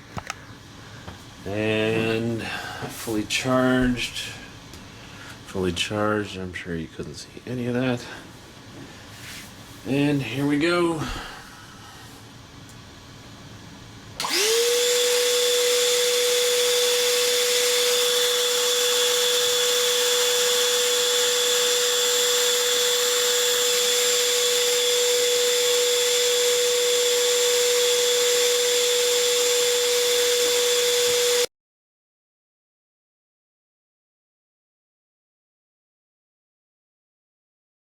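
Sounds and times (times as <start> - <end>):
vacuum motor whine: 14.2 - 31.5.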